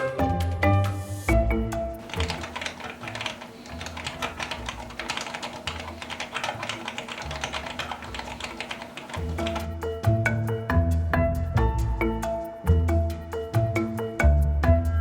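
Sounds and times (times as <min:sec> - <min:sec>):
fast typing key clicks: 0:02.1 - 0:09.2.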